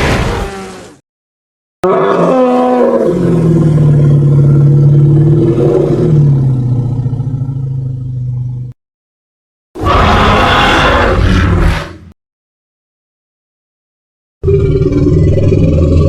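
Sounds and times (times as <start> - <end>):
deep animal roar: 1.8 - 8.8, 9.8 - 12.0, 14.4 - 16.0.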